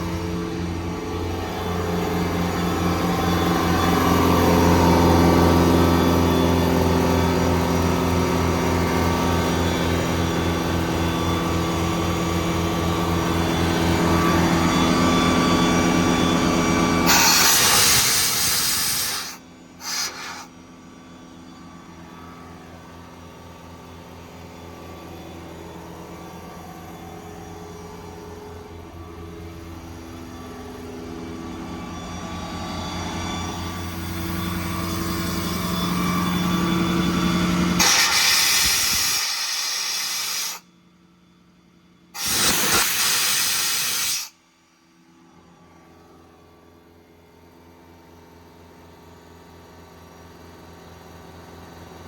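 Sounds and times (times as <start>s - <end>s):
diesel engine running: 0.0s - 40.7s
air compressor running: 0.0s - 48.0s
loud rush of air: 17.1s - 20.5s, 42.2s - 44.3s.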